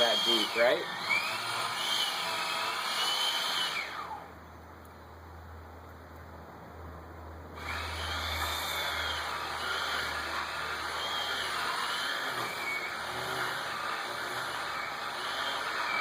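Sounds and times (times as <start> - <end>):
electric chainsaw cutting wood: 0.0 - 4.3, 7.6 - 16.0.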